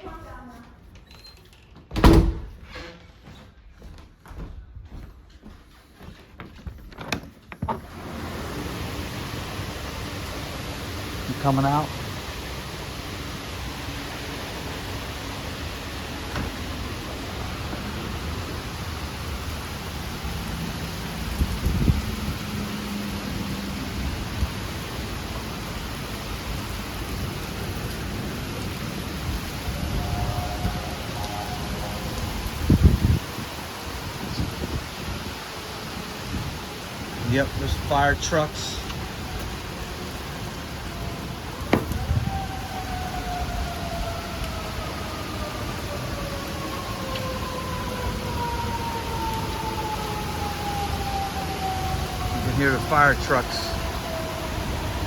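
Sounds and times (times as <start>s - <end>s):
door clicks and knocks: 1.8s - 2.6s, 41.7s - 42.0s
storm wind and rain hiss: 6.9s - 55.0s
low thunder rumble: 40.8s - 45.3s.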